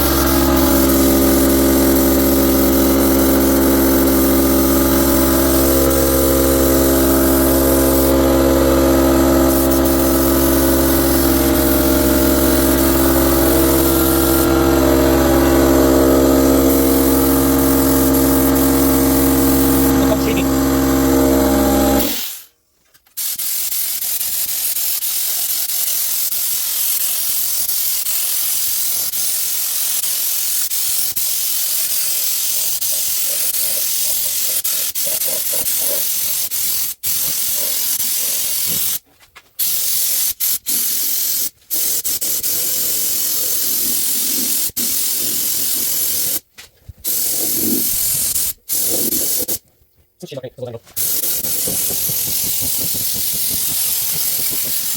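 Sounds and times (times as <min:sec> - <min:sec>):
paint spray hissing: 0:00.0 - 0:22.5, 0:23.1 - 0:39.0, 0:39.6 - 0:49.6, 0:50.9 - 0:54.9.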